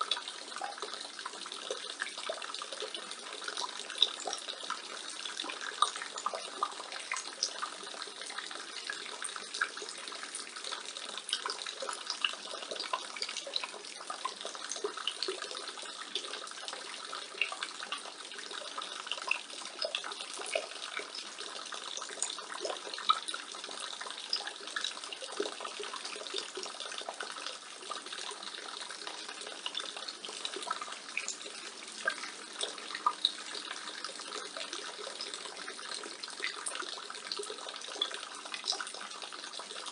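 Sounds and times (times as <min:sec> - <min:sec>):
rainwater pouring from gutter: 0:00.0 - 0:39.9
water dripping: 0:00.0 - 0:39.9.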